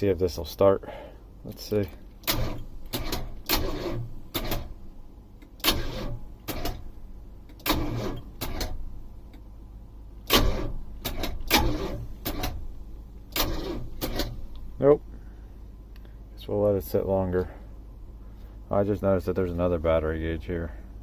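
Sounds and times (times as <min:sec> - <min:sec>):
low hum: 0:00.0 - 0:21.0
engine starter cranking: 0:02.1 - 0:04.8, 0:05.5 - 0:08.9, 0:10.2 - 0:14.6.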